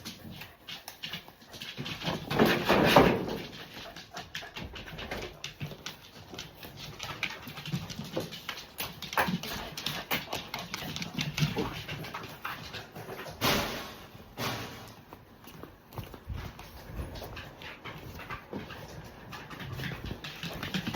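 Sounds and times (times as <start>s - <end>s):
rustling: 0.0s - 20.9s
dog making sounds: 16.5s - 20.9s.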